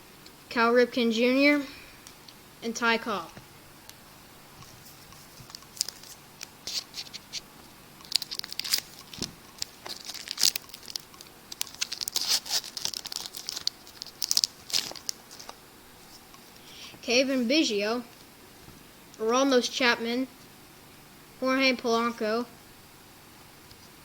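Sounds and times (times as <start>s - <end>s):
wrapper tearing and crinkling: 5.3s - 7.4s, 8.0s - 15.6s.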